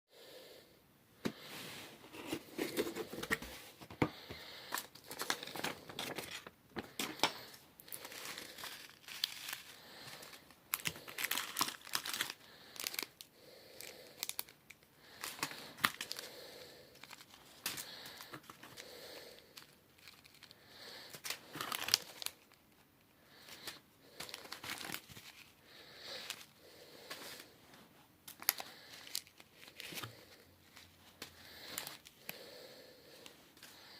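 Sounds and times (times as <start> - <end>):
packaging crinkling and tearing: 4.7 - 16.3, 19.6 - 22.8, 23.5 - 25.5, 28.3 - 30.2.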